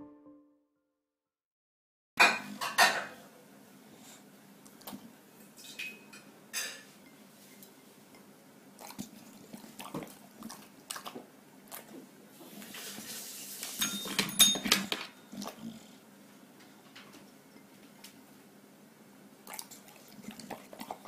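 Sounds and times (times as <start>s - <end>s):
dog eating and chewing: 8.8s - 12.1s, 15.3s - 16.0s, 19.4s - 21.0s.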